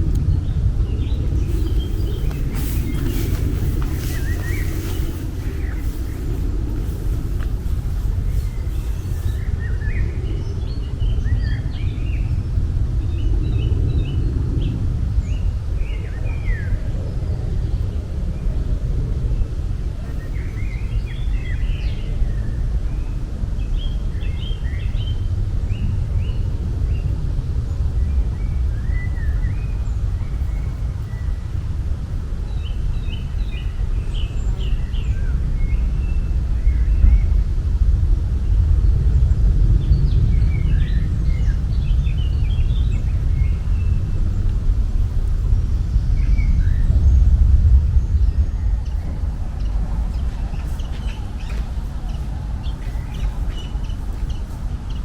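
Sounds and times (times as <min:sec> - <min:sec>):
small birds chirping: 0:00.0 - 0:12.4, 0:39.6 - 0:55.0
steady low rumble: 0:00.0 - 0:55.0.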